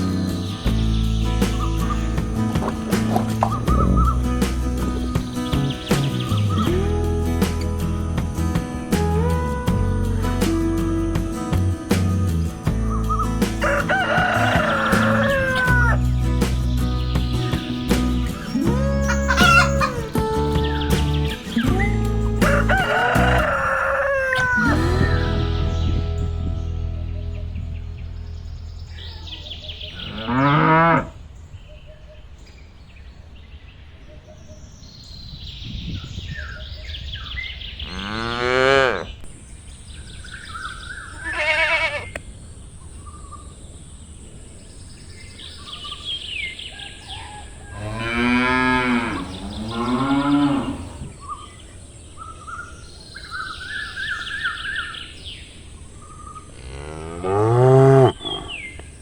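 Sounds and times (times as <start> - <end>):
small birds chirping: 0.0 - 59.0
cows mooing: 30.0 - 31.2, 37.9 - 39.2, 47.7 - 51.2, 56.6 - 58.6.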